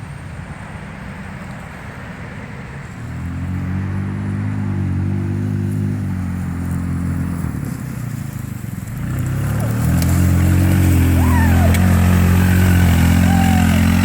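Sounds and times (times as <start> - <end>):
small engine running and revving: 0.0 - 14.0.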